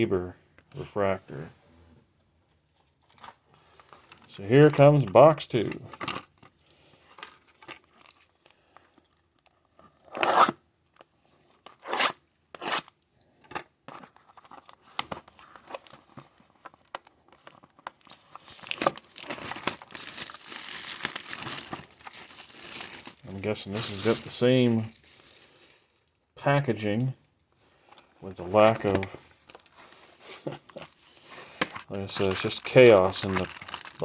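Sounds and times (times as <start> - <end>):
packaging crinkling: 16.6 - 26.2, 28.3 - 34.0
packaging tearing open: 18.0 - 25.9, 32.1 - 34.0.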